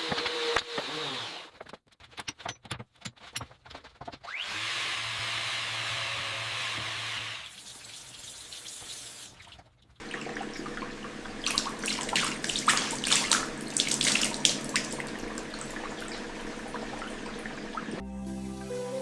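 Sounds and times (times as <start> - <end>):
water splashing: 9.4 - 18.0
water running from faucet into sink: 10.0 - 18.0.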